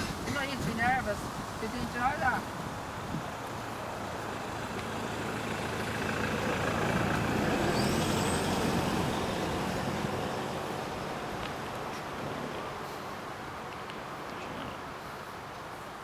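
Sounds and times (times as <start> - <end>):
vehicle passing by: 3.6 - 13.6.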